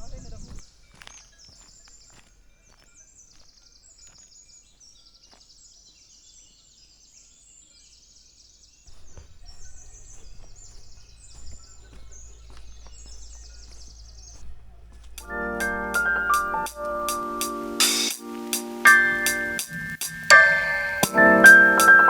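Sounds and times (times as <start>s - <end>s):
low steady rumble: 10.4s - 15.8s
high rapid chirps and trills: 15.2s - 22.0s.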